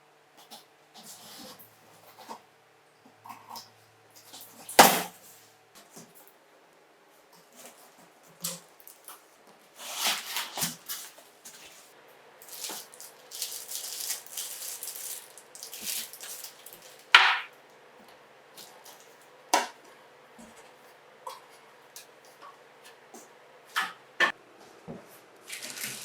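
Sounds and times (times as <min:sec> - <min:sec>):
packaging rustling: 0:12.4 - 0:17.1, 0:25.5 - 0:26.0.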